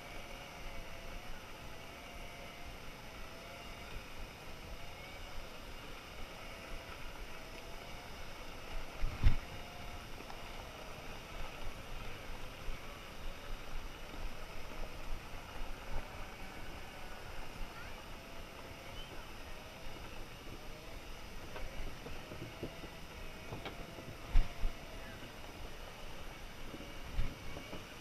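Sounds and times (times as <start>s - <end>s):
faint wavering motor whine: 0.0s - 28.0s
steady rumble: 0.0s - 28.0s
wind noise: 8.0s - 10.2s, 11.0s - 28.0s.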